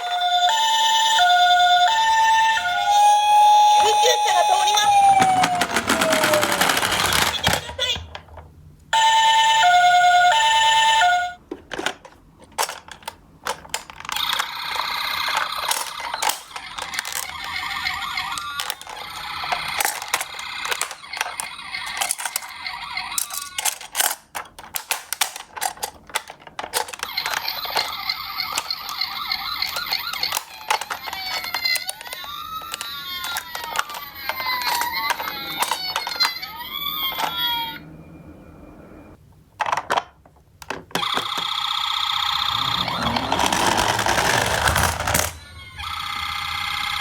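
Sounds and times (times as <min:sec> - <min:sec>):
two-tone ambulance siren: 0:00.0 - 0:06.8, 0:09.0 - 0:11.4
wailing sirens: 0:00.0 - 0:06.8, 0:42.0 - 0:44.4
toy cars clattering down a slope: 0:03.8 - 0:07.9, 0:11.7 - 0:36.5, 0:42.4 - 0:45.4.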